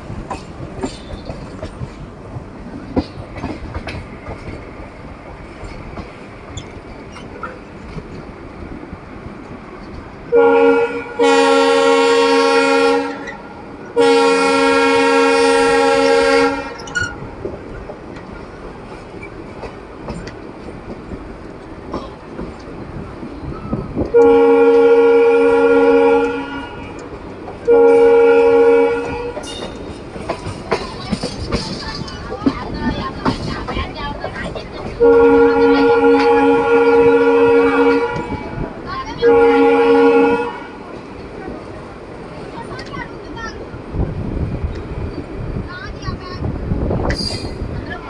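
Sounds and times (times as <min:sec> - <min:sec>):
train rumble and clickety-clack: 0:00.0 - 0:48.0
locomotive air horn blasts: 0:10.3 - 0:17.2, 0:24.1 - 0:27.0, 0:27.6 - 0:29.5, 0:35.0 - 0:38.6, 0:39.2 - 0:40.9.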